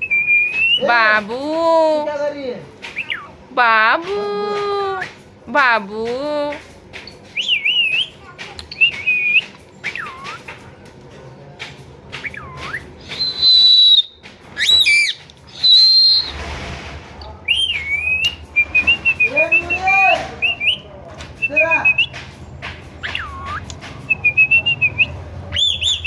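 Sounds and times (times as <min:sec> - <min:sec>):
parakeet whistling and calling: 0:12.3 - 0:16.4, 0:23.0 - 0:26.0
brief rush of noise: 0:16.1 - 0:17.2.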